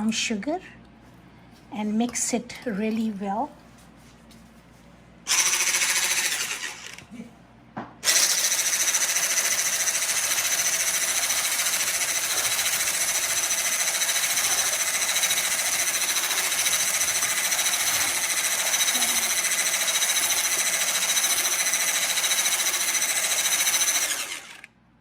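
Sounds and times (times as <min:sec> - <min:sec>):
electric mixer running: 0:05.3 - 0:07.2, 0:08.0 - 0:24.7.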